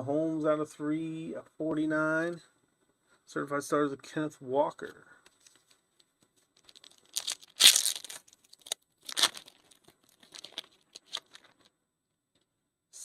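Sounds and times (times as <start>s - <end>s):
foil wrapper tearing and crinkling: 6.6s - 11.6s.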